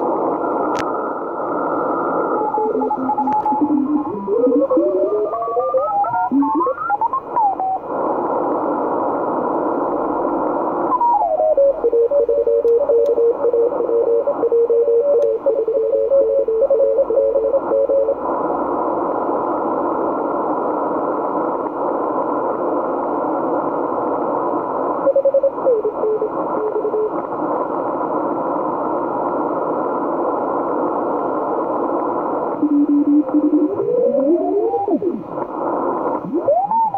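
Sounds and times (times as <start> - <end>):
radio band noise hiss: 0.0 - 36.9
morse code beeping tones: 32.6 - 34.5.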